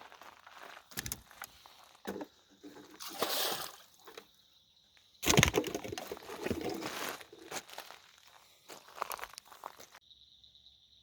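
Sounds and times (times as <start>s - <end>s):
water splashing and pouring: 2.9s - 4.0s.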